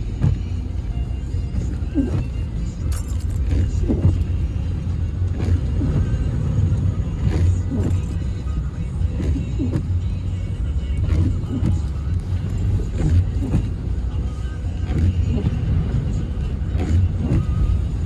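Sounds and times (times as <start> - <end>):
background music: 0.0 - 18.0
car engine and road rumble: 0.0 - 18.0.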